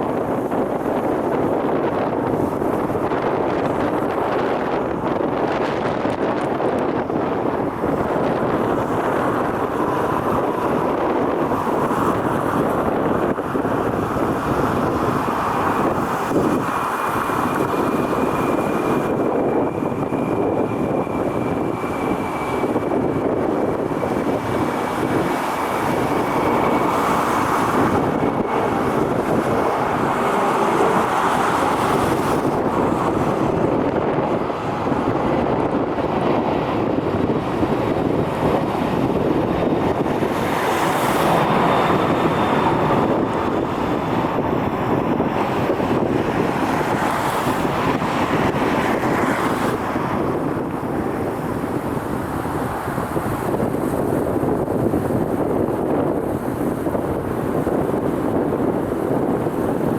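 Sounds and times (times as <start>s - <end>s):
wind buffeting microphone: 0.0s - 59.9s
steady roar: 24.1s - 35.5s.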